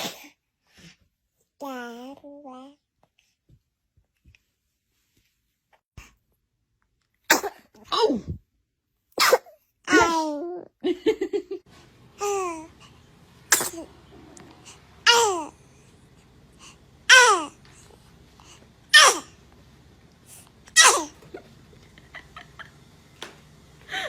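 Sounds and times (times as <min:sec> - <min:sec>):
baby sneezing: 0:00.0 - 0:00.4, 0:07.3 - 0:08.3, 0:09.2 - 0:10.2, 0:13.5 - 0:14.0, 0:18.9 - 0:19.4, 0:20.8 - 0:21.2
baby giggling: 0:20.8 - 0:22.8.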